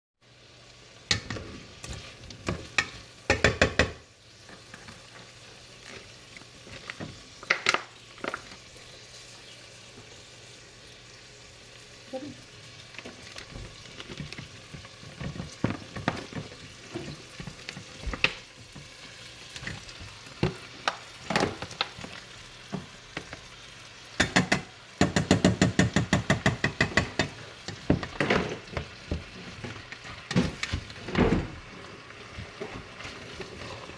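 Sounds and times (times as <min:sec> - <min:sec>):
food sizzling in frying pan: 0:00.2 - 0:33.9
utensil knocking and scraping pan: 0:01.1 - 0:05.0, 0:24.2 - 0:31.2.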